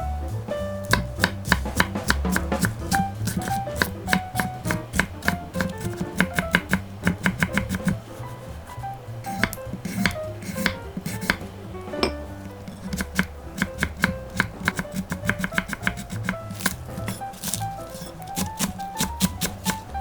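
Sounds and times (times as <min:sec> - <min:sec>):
light background music: 0:00.0 - 0:20.0
knife chopping on cutting board: 0:00.8 - 0:20.0.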